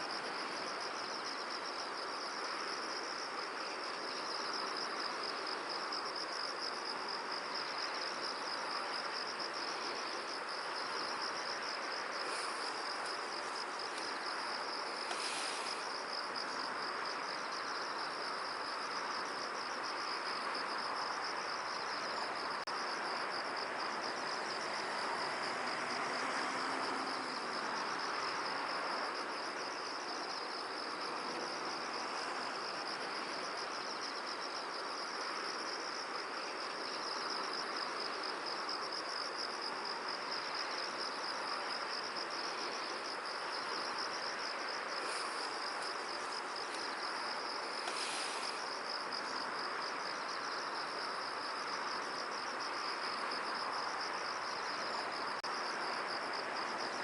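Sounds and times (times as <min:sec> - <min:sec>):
insects trilling: 0:00.0 - 0:57.0
steady rushing hiss: 0:00.0 - 0:57.0.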